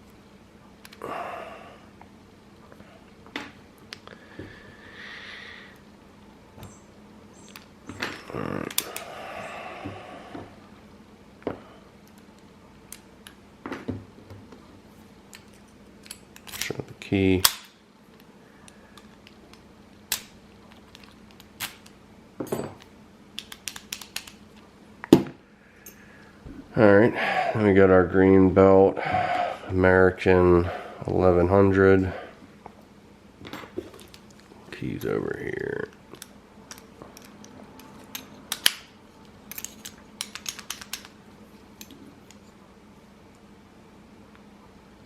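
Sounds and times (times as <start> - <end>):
padlocks and key clicking: 23.4 - 24.4, 36.2 - 38.9, 39.5 - 41.2.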